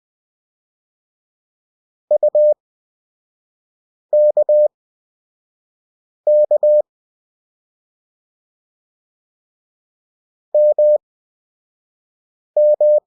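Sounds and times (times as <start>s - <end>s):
morse code beeps: 2.2s - 2.6s, 4.2s - 4.7s, 6.3s - 6.8s, 10.6s - 11.0s, 12.6s - 13.0s.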